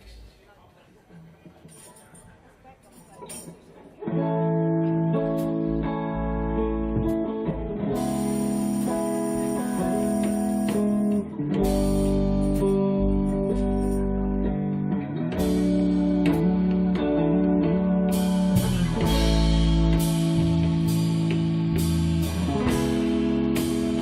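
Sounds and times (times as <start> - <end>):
electric guitar melody: 4.0 - 24.0
live band playing blues-rock: 4.2 - 24.0
bright shimmering cymbal wash: 8.0 - 12.7.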